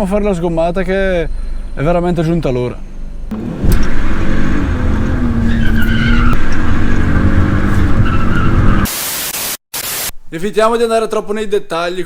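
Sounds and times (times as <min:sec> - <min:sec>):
car engine revving high: 0:03.3 - 0:08.9
tyres squealing in a burnout: 0:03.3 - 0:08.9.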